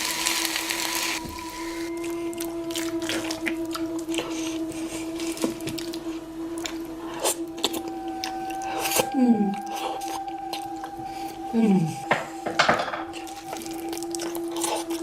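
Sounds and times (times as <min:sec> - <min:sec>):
steady hum: 0:00.0 - 0:15.0
chewing and squelching: 0:01.9 - 0:11.4, 0:13.1 - 0:15.0.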